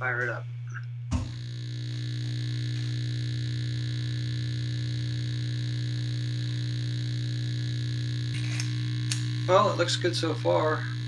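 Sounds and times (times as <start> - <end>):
grinder motor humming: 0.8 - 11.0.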